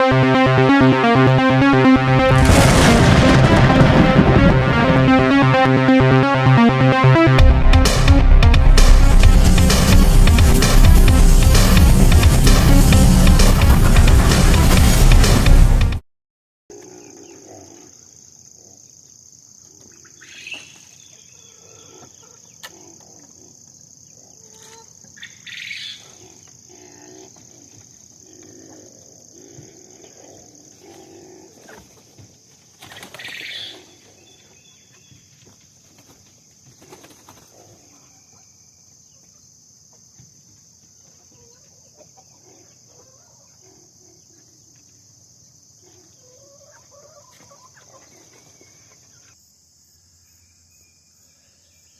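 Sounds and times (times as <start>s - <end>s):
chickens clucking: 41.0s - 43.6s, 45.9s - 49.0s.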